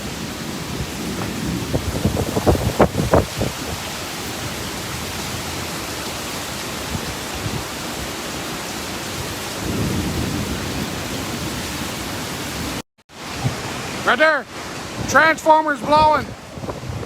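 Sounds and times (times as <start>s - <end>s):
heavy rain and wind: 0.0s - 17.0s.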